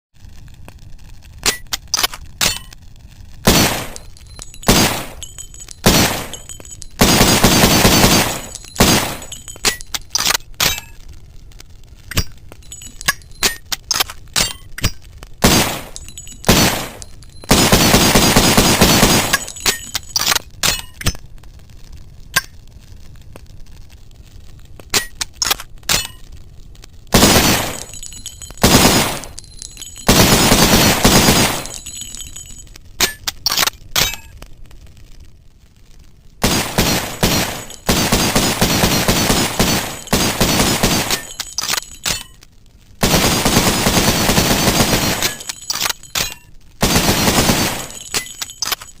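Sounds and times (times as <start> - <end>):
small metallic clicks: 1.4 - 2.8, 8.5 - 11.0, 12.0 - 15.2, 19.3 - 21.3, 24.8 - 26.3, 31.6 - 34.5, 41.1 - 42.5, 45.2 - 46.6, 47.9 - 49.0
rapid gunshot bursts: 3.5 - 4.0, 4.6 - 9.5, 15.4 - 19.6, 27.2 - 28.0, 28.6 - 29.3, 30.0 - 31.9, 36.4 - 41.4, 43.0 - 45.5, 46.8 - 48.1
pistol gunshots: 3.5 - 10.8, 15.4 - 20.1, 27.2 - 29.4, 30.0 - 32.2, 36.4 - 42.2, 46.8 - 48.4.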